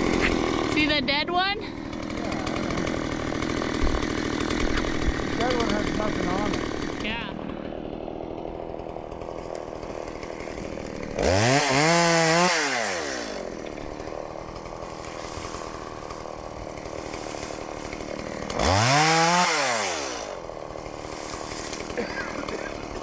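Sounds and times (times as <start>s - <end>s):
chainsaw revving: 0.0s - 23.0s.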